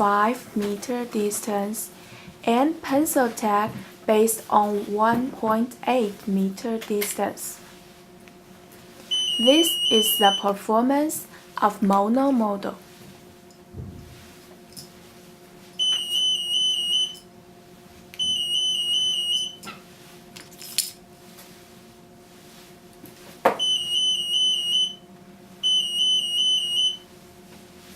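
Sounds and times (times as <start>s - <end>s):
steady low hum: 0.0s - 27.9s
warbling anti-theft alarm beep: 9.1s - 10.6s, 15.8s - 17.2s, 18.2s - 19.6s, 23.6s - 27.0s.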